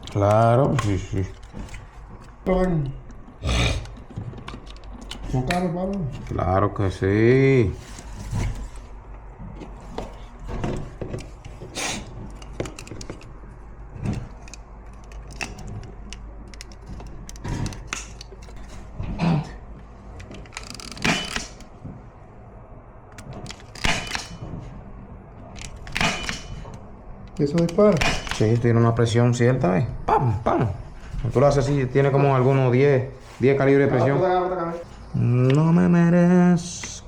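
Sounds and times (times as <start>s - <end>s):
tools clicking and knocking: 0.0s - 6.4s, 9.5s - 19.0s, 20.2s - 21.9s, 23.1s - 24.7s, 25.5s - 28.7s
scraping noises: 30.9s - 35.9s.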